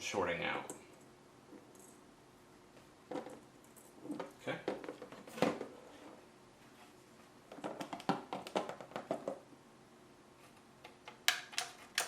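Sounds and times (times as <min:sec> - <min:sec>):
small parts clicking and tapping: 0:10.8 - 0:12.0.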